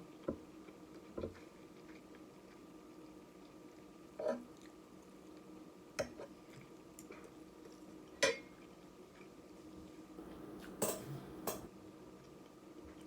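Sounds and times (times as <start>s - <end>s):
utensils clinking against dish: 10.2s - 11.7s.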